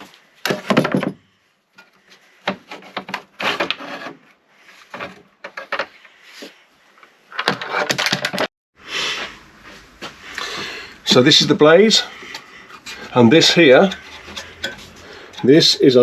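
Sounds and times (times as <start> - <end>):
clattering knocks and scraping: 0.0 - 6.5, 7.3 - 8.5, 11.1 - 16.0.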